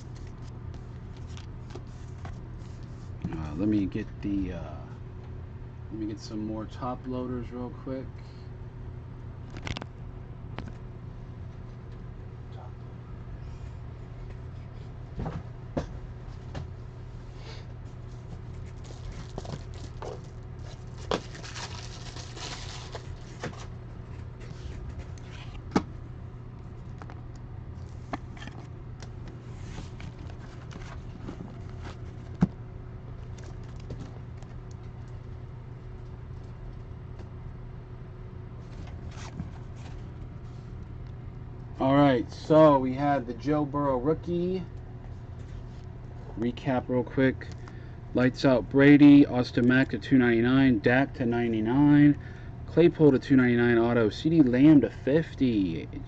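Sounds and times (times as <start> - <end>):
steady low hum: 0.0 - 56.0
rustling scrape: 29.4 - 32.3.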